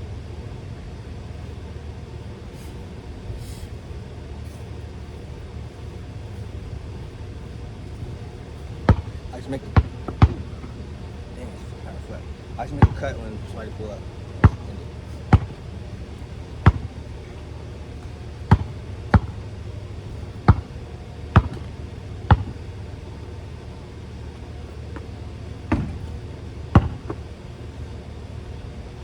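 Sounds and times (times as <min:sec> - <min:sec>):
low background rumble: 0:00.0 - 0:29.0
basketball bouncing on hard court: 0:08.8 - 0:10.8, 0:12.8 - 0:13.2, 0:14.4 - 0:15.8, 0:16.5 - 0:22.8, 0:24.9 - 0:27.4.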